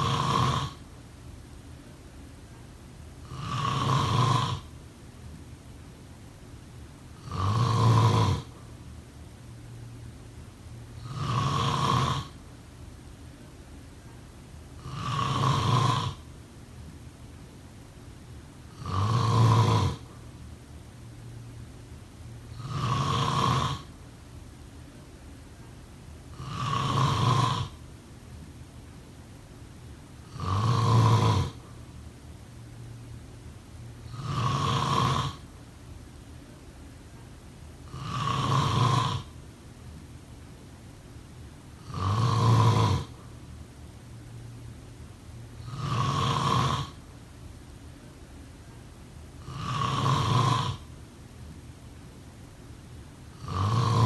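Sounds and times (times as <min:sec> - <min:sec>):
person snoring: 0:00.0 - 0:00.8, 0:03.2 - 0:04.7, 0:07.2 - 0:08.6, 0:11.0 - 0:12.4, 0:14.8 - 0:16.3, 0:18.7 - 0:20.2, 0:22.5 - 0:23.9, 0:26.3 - 0:27.8, 0:30.3 - 0:31.8, 0:34.1 - 0:35.4, 0:37.9 - 0:39.4, 0:41.8 - 0:43.2, 0:45.6 - 0:47.0, 0:49.4 - 0:50.9, 0:53.3 - 0:54.0.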